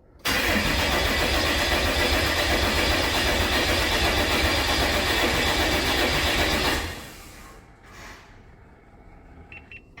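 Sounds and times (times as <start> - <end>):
diesel engine cranking: 0.2 - 7.4.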